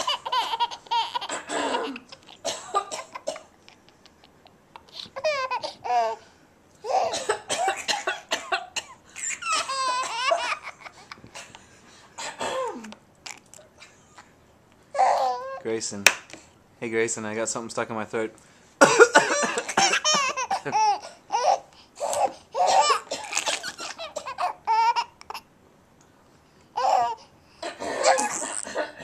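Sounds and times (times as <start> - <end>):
baby giggling: 0.0 - 6.2, 9.2 - 11.6, 18.9 - 25.5, 26.8 - 29.0
adult coughing: 1.2 - 3.5, 7.0 - 9.4, 12.2 - 12.9, 18.8 - 21.0, 27.6 - 29.0.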